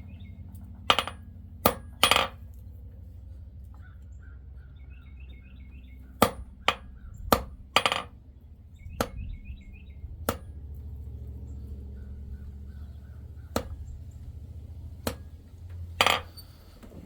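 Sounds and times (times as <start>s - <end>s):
bird chirping: 0.0s - 0.4s, 3.8s - 7.3s, 8.3s - 10.1s, 11.4s - 14.4s
low hum: 0.0s - 17.0s
hammer striking anvil: 0.9s - 2.4s.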